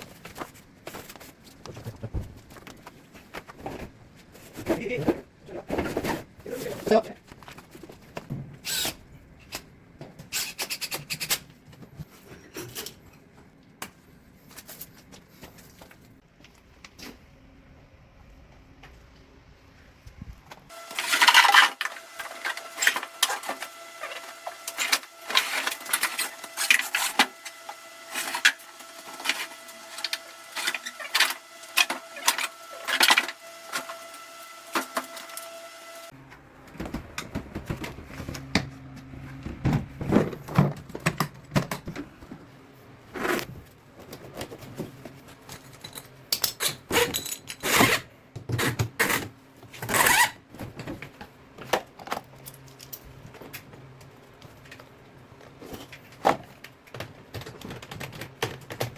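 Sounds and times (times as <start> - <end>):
tools clicking and clattering: 45.2 - 47.9.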